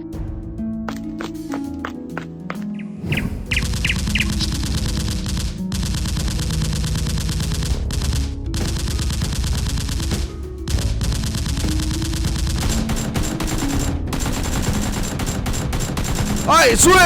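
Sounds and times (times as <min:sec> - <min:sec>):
background music: 0:00.0 - 0:17.0
machine-gun bursts: 0:10.8 - 0:17.0.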